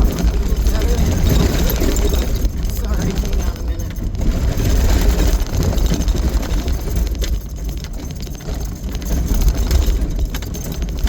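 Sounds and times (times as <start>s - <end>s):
vehicle engine and tyres rumbling: 0.0s - 7.8s
knocks and rattles from bumps: 0.0s - 11.0s.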